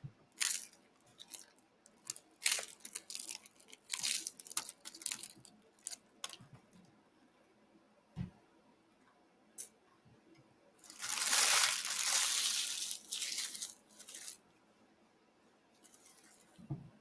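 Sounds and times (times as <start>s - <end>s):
loud crunching and crackling: 0.4s - 6.4s, 10.8s - 14.4s.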